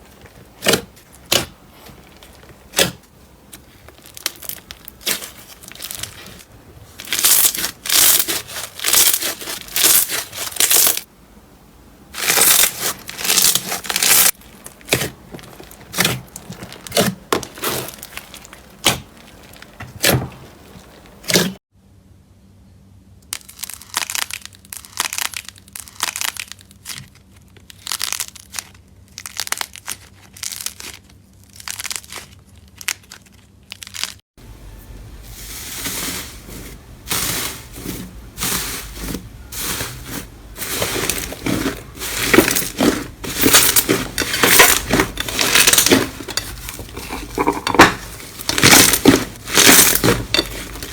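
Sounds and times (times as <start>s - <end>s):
slime squeezed crackling sticky: 7.0s - 11.0s, 23.4s - 34.2s.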